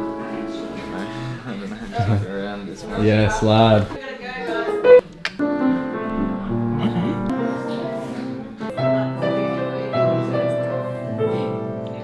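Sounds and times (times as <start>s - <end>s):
piano playing chords and melody: 0.0s - 1.5s, 4.7s - 12.0s.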